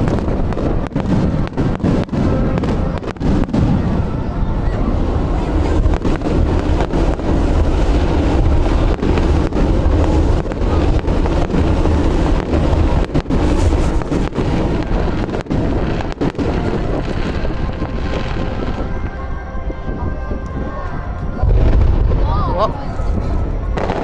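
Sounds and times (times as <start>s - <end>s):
fireworks barrage rumbling: 0.0s - 24.0s.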